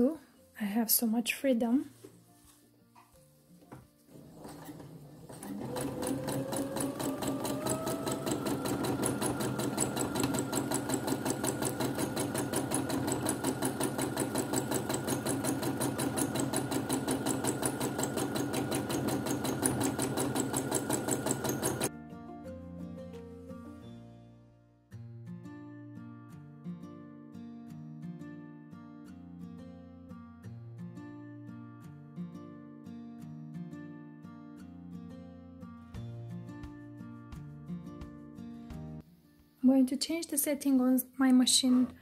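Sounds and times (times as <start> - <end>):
sewing machine stitching: 4.1 - 21.9.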